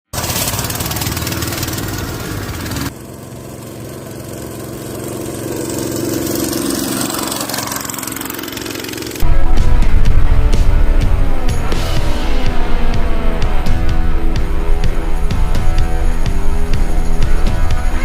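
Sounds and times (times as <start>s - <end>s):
go-kart engine running: 0.1s - 18.0s.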